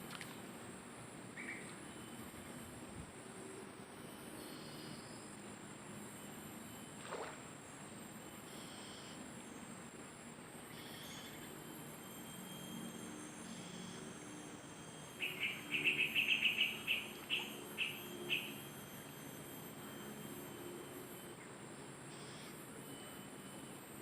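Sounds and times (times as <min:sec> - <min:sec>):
high insect buzz: 0:01.4 - 0:09.8, 0:10.6 - 0:24.0
bird chirping: 0:15.1 - 0:18.7.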